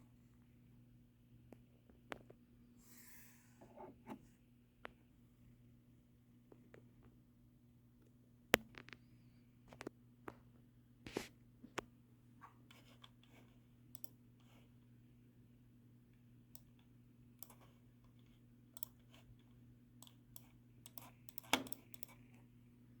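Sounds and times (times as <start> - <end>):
low electrical hum: 0.0 - 23.0
small clicks and taps: 8.5 - 9.1.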